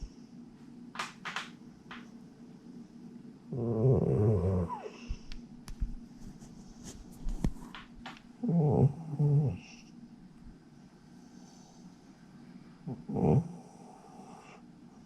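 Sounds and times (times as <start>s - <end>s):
cat snoring: 3.5s - 5.2s, 8.4s - 9.8s, 12.9s - 14.6s.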